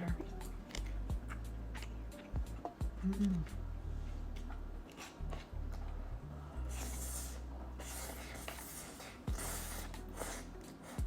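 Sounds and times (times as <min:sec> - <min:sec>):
background music bass: 0:00.0 - 0:11.0
slurping noodles: 0:06.6 - 0:11.0.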